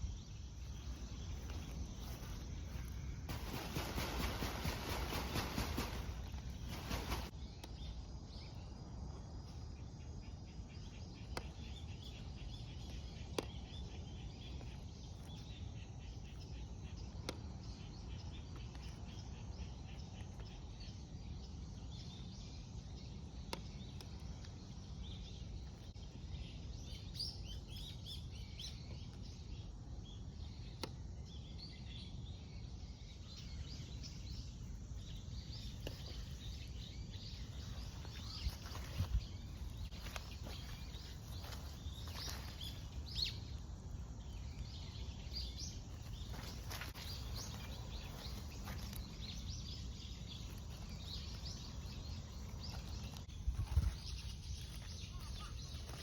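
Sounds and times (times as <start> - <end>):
small birds chirping: 0.0 - 56.0
steady low rumble: 32.2 - 55.7.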